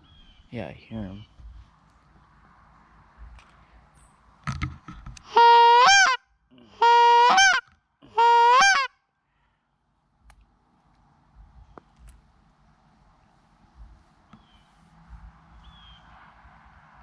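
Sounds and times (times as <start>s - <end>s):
goose call honks: 5.3s - 8.9s.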